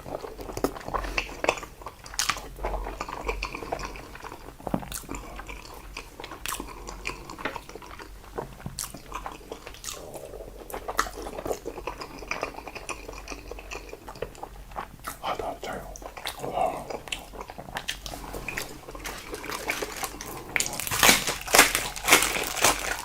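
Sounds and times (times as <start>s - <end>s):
person chewing wet mouth sounds: 0.0s - 23.0s.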